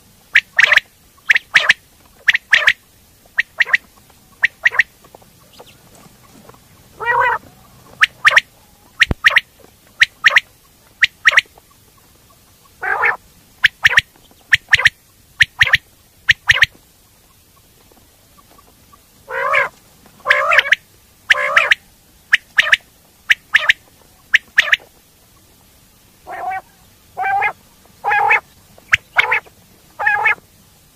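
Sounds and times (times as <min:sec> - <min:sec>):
wavering low quail calls: 0:00.0 - 0:25.6, 0:26.2 - 0:30.4
quail calling: 0:00.3 - 0:25.6, 0:26.2 - 0:30.4.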